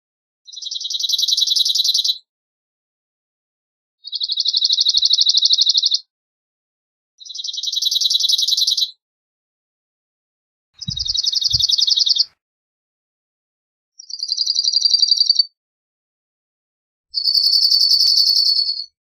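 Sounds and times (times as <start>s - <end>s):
bird song rattle: 0.5s - 2.2s, 4.0s - 6.0s, 7.2s - 9.0s, 10.8s - 12.3s, 14.0s - 15.5s, 17.2s - 19.0s.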